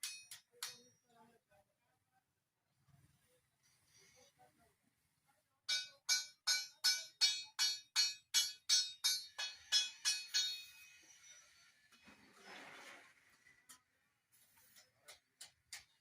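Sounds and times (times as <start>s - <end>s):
hammer striking sheet metal: 0.0s - 0.9s, 5.7s - 11.0s.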